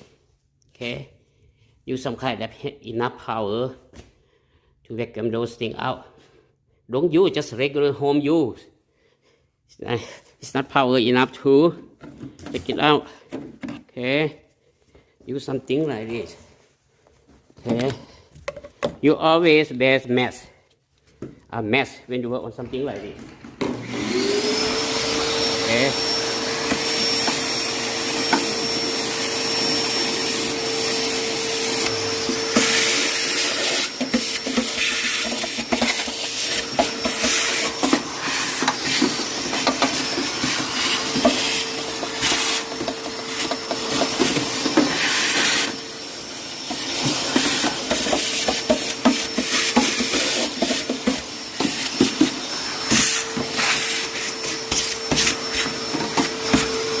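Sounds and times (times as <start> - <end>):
vacuum cleaner motor whining: 22.7 - 57.0.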